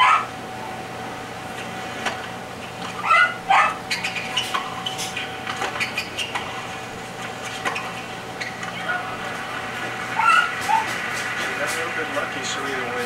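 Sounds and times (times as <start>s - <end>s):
small dog yelping: 0.0s - 0.3s, 2.9s - 4.5s, 10.1s - 11.0s.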